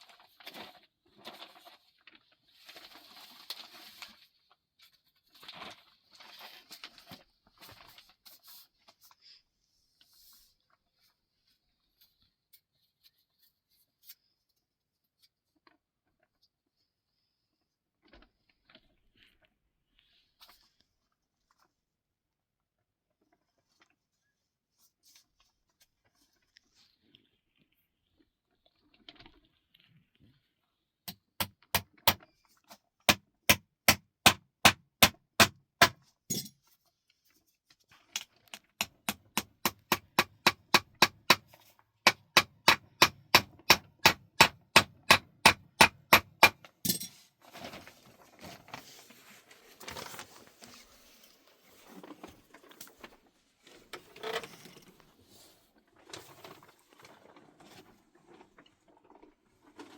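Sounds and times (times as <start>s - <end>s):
rapid hammering: 33.5s - 36.0s, 38.8s - 41.4s, 42.1s - 46.6s.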